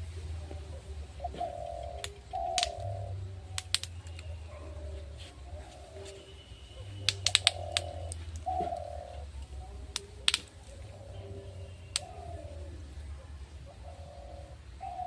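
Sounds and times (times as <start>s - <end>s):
bird cooing: 0.0s - 15.0s
sharp clicks: 1.9s - 2.9s, 3.6s - 4.3s, 7.1s - 8.5s, 9.4s - 10.5s.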